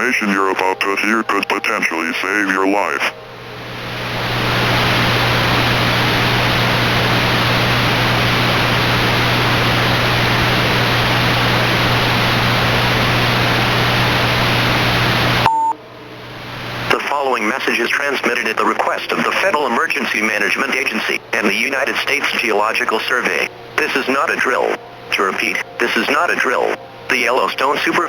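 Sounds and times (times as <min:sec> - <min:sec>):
radio static hiss: 0:00.0 - 0:03.2, 0:03.9 - 0:15.5, 0:16.6 - 0:28.0
low steady hum: 0:00.0 - 0:28.0
short beep: 0:15.4 - 0:15.8.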